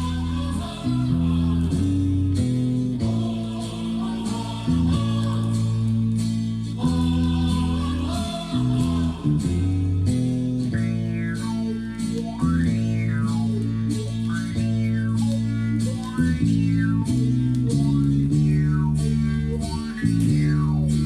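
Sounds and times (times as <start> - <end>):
guitar-led music from vinyl record: 0.0 - 21.0.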